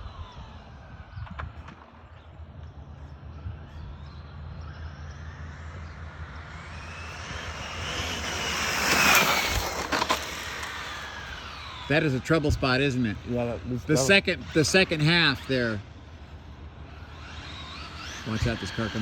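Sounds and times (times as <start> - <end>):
rc car motor whine: 0.0 - 19.0.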